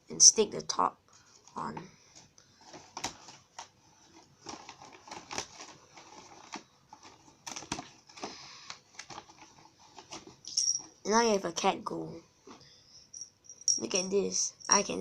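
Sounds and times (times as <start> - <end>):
paper rustling: 2.1 - 10.4.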